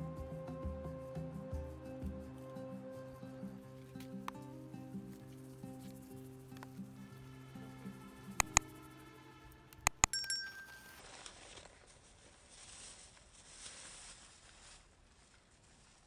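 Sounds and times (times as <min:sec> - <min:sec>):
sharp clinks: 0:09.9 - 0:11.0
short ringing tone: 0:09.9 - 0:11.0.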